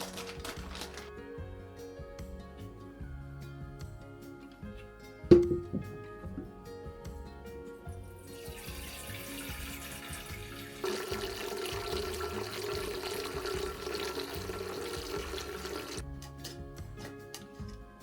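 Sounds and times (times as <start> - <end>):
tap running into a sink: 5.3 - 6.0.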